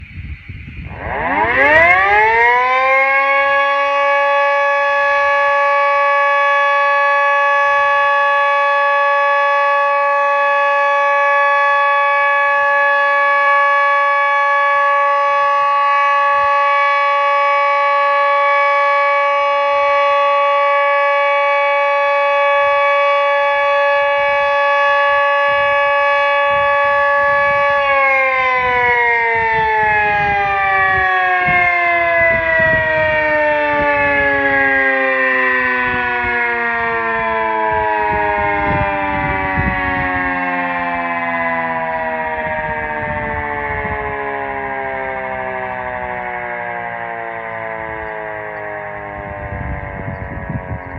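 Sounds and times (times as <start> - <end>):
siren steady tone: 0.0 - 50.9.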